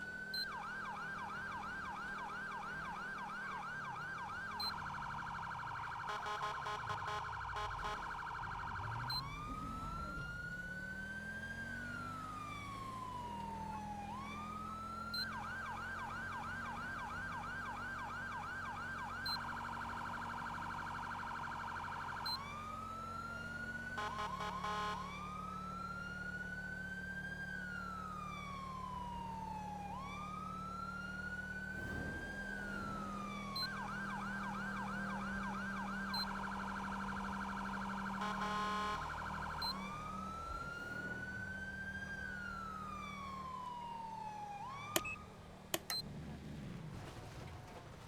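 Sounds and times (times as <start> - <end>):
electronic siren wailing and yelping: 0.4 - 11.0, 31.9 - 45.2
sharp clicks: 45.8 - 46.0.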